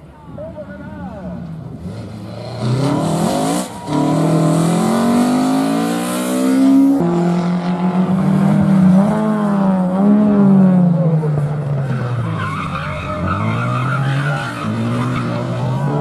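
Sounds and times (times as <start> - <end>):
car engine revving: 1.7 - 16.0.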